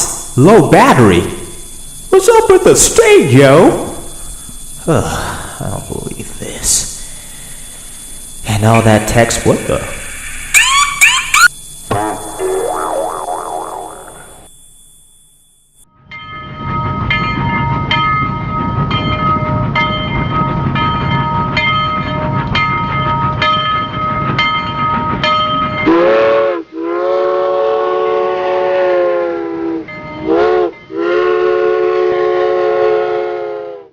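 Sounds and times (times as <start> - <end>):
train rumble and clack: 16.2 - 26.3
train air horn: 25.9 - 33.9.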